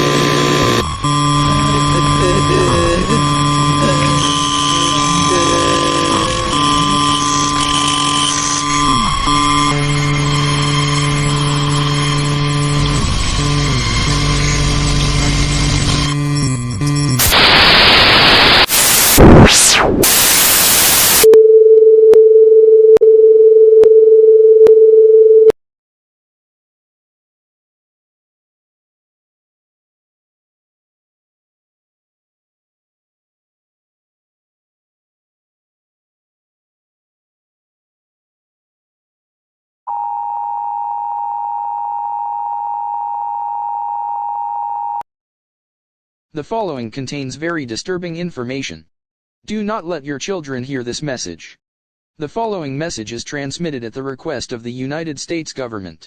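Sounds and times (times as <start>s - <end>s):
steady mid-pitched tone: 0.0s - 14.4s
sweeping tone: 0.1s - 16.2s
loud static hiss: 17.2s - 21.3s.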